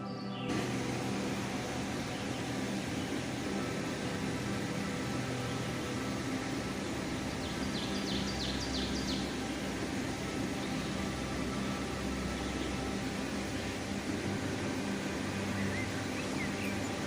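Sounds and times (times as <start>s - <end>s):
low hum: 0.0s - 17.0s.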